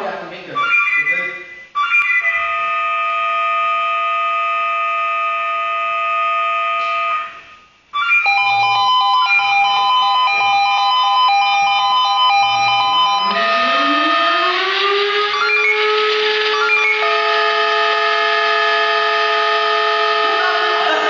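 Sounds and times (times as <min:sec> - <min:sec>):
trilling pager alert tone: 0:06.6 - 0:17.1.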